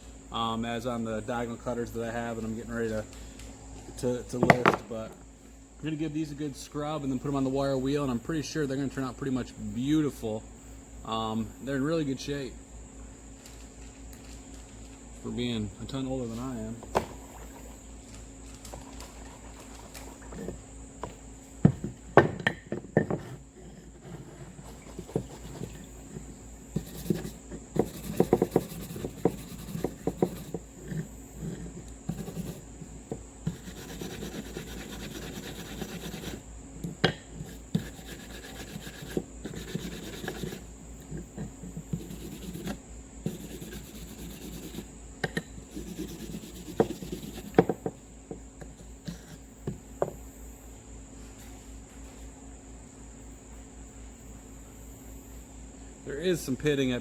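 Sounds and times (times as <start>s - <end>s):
brush scrubbing metal: 23.4s - 44.9s, 45.6s - 47.6s.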